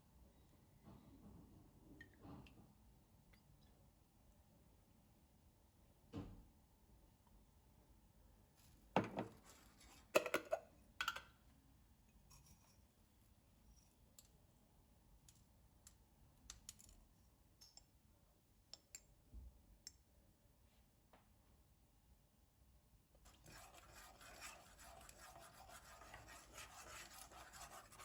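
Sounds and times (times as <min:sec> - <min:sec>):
small objects clicking and knocking: 0:15.2 - 0:17.0.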